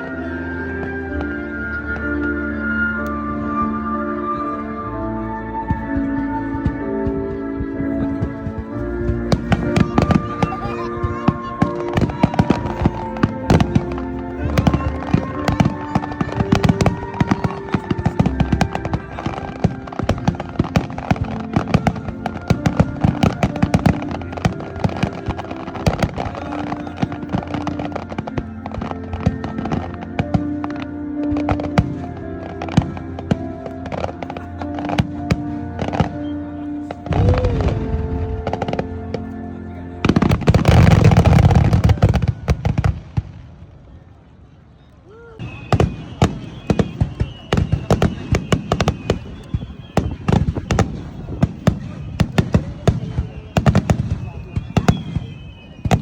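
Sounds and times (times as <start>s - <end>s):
music playing: 0.0s - 43.6s, 45.4s - 56.0s
fireworks popping and crackling: 5.8s - 39.3s, 40.0s - 43.5s, 45.4s - 56.0s
firework burst: 45.4s - 56.0s.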